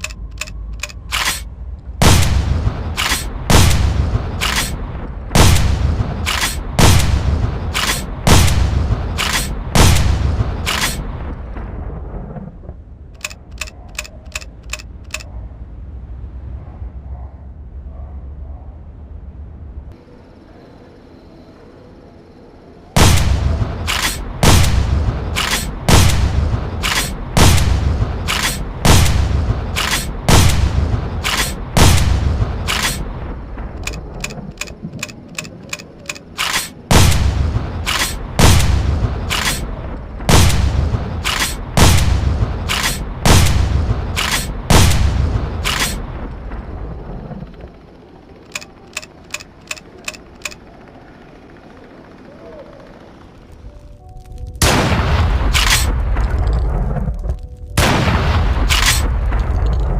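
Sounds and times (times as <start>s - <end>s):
quick light clicks: 0.0s - 1.5s, 13.2s - 15.3s, 33.8s - 36.8s, 48.4s - 50.6s
shotgun shots: 2.0s - 4.8s, 5.4s - 11.1s, 23.0s - 33.1s, 36.1s - 39.7s, 40.3s - 46.1s, 54.6s - 56.0s, 57.8s - 59.2s.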